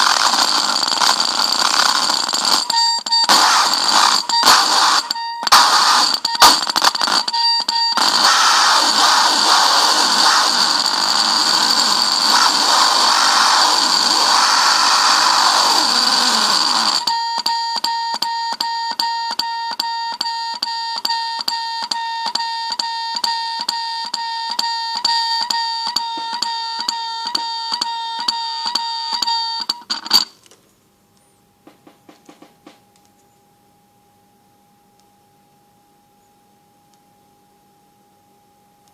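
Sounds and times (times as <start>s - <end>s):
pulsing high tone: 0.0s - 17.8s
electronic circuit harsh buzzing: 0.0s - 18.6s.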